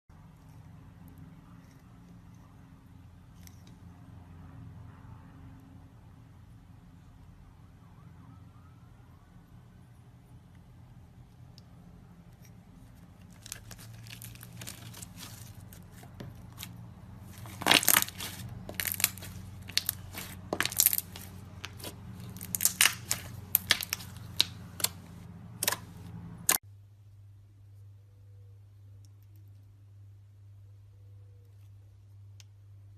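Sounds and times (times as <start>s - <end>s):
slime popping and crackling: 13.3s - 16.7s, 17.3s - 26.6s.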